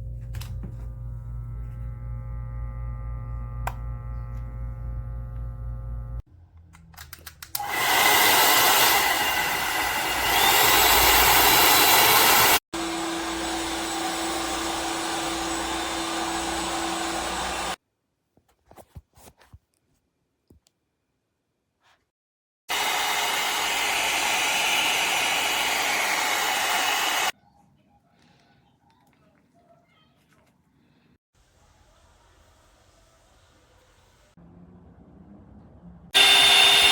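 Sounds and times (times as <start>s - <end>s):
hot air brush running: 0.6s - 6.2s, 7.6s - 17.8s, 22.7s - 27.3s, 36.2s - 36.9s.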